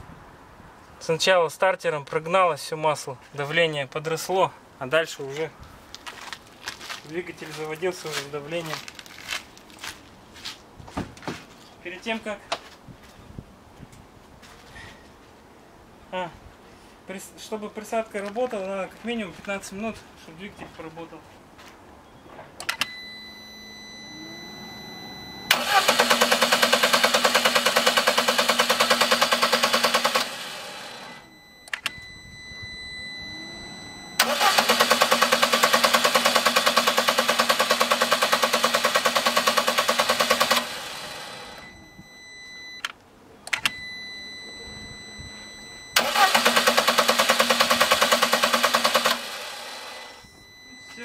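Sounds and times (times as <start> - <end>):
car engine cranking on starter: 23.9 - 32.0, 33.0 - 41.8, 45.8 - 50.2.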